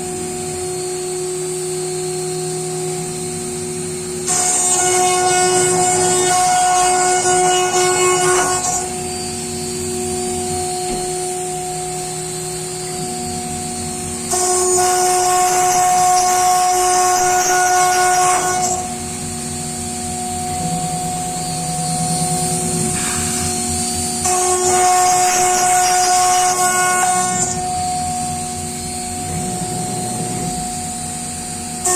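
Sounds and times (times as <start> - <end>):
router spindle whine cutting wood: 0.0 - 31.9.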